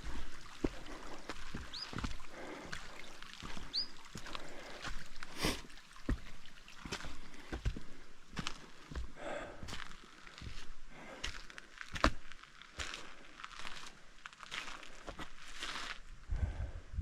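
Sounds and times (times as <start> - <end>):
footsteps on a mountain trail: 0.0 - 16.6
bird chirping: 1.5 - 2.1, 3.0 - 4.1.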